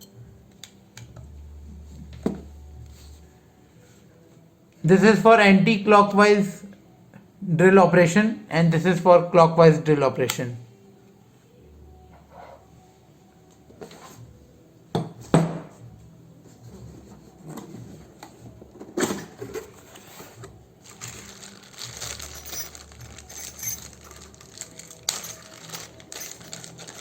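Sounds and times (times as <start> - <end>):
light metallic clinking: 22.0 - 27.0.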